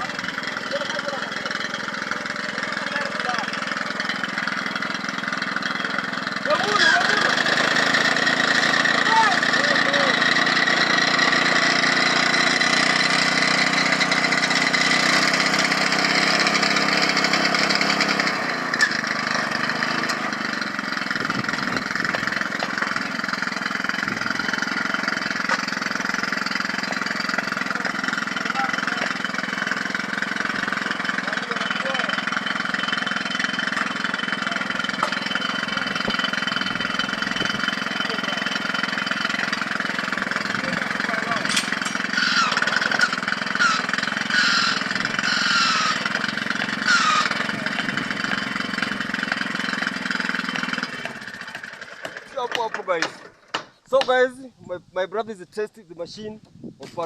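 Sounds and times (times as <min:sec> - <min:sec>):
construction machine engine running: 0:00.0 - 0:57.0.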